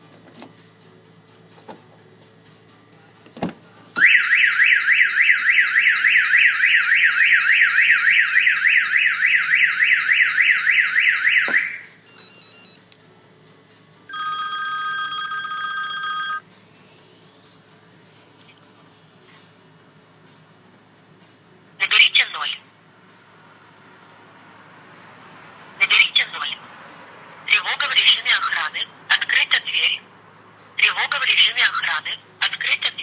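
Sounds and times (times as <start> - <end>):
car alarm siren warbling: 4.0 - 12.4.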